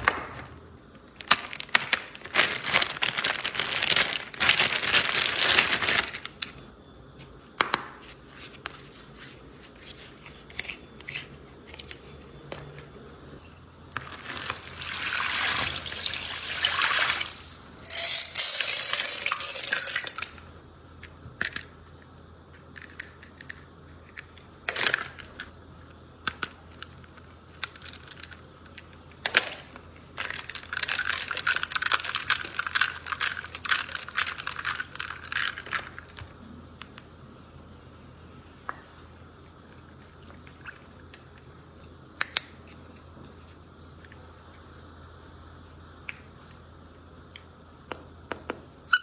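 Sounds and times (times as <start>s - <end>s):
packaging rustling and crinkling: 1.2s - 6.5s.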